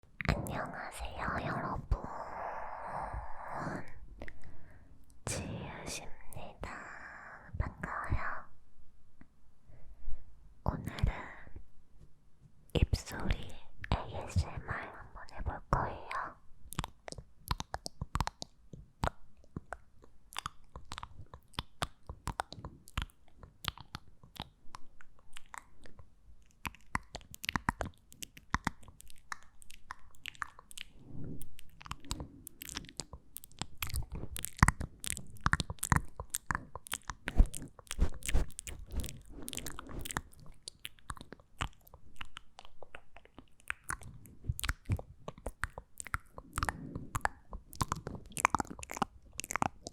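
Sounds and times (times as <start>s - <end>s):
wet mouth clicks and smacks: 16.7s - 49.9s.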